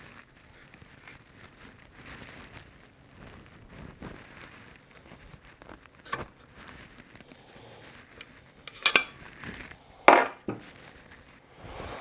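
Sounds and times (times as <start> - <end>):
metal parts and tools clinking: 8.6 - 9.2, 10.1 - 10.6.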